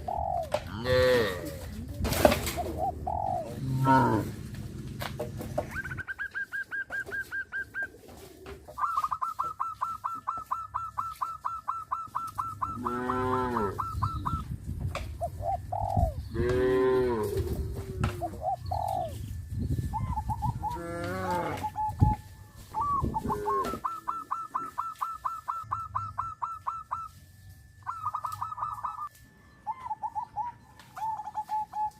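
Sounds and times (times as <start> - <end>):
cattle mooing: 0.7 - 1.7, 3.5 - 4.4, 12.8 - 13.8, 16.4 - 17.6, 20.7 - 21.7
bird repeating high call: 8.8 - 14.4, 21.4 - 27.2, 27.8 - 31.9.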